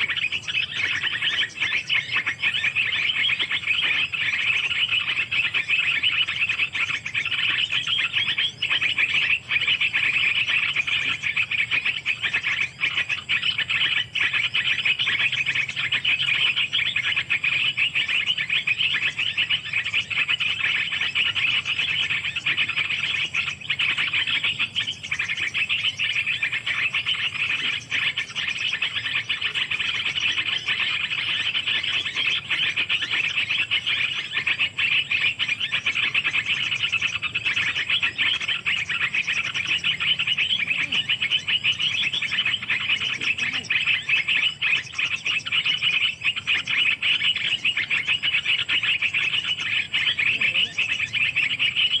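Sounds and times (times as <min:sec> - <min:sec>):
high-pitched chirring animal chorus: 0:00.0 - 0:52.0.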